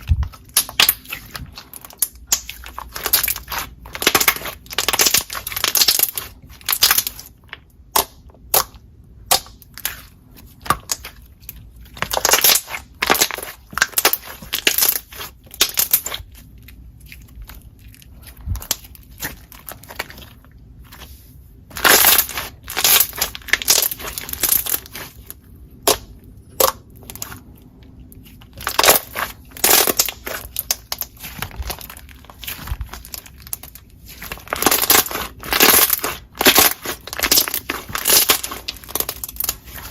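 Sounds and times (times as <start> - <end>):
slime clicking and popping: 0.1 - 10.0, 21.8 - 27.4, 28.6 - 39.9.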